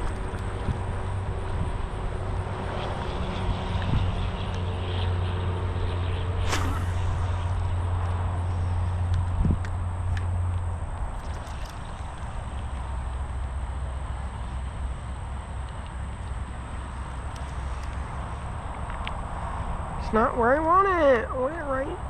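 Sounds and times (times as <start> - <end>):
engine humming: 0.0 - 19.6
brief sharp sound: 6.4 - 7.6.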